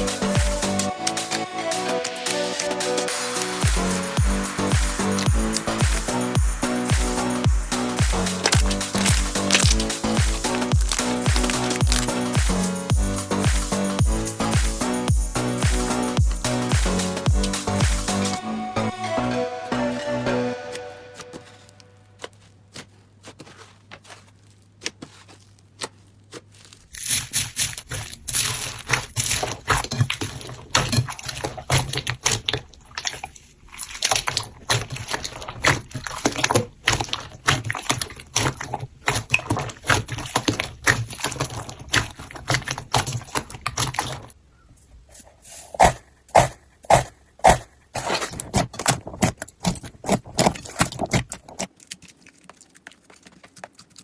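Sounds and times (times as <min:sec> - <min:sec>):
slime sticky clicks and pops: 0:08.1 - 0:12.6.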